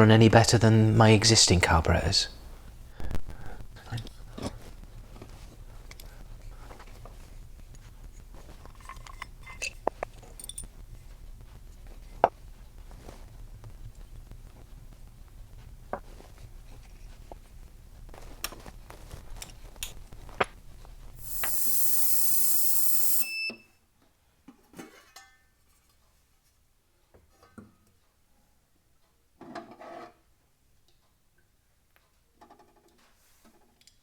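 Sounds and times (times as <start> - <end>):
loud rushing hiss: 21.2 - 23.2
short electronic beep: 21.2 - 23.6.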